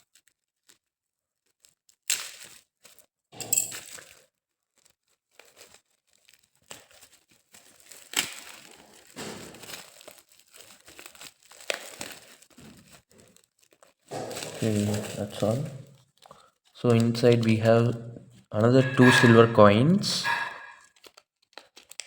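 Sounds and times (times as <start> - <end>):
packaging rustling and crinkling: 1.4 - 3.1, 3.7 - 18.3, 21.0 - 22.0
packaging tearing: 1.5 - 3.0, 4.8 - 16.3, 21.0 - 22.0.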